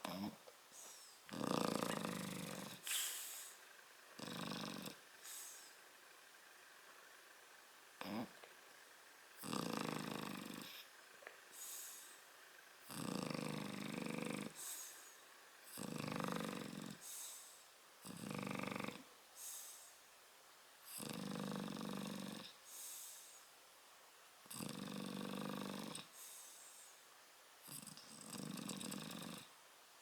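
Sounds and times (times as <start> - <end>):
dog snoring: 0.0 - 5.8, 8.0 - 8.6, 9.4 - 12.2, 12.8 - 19.9, 20.8 - 23.4, 24.4 - 26.9, 27.6 - 29.6.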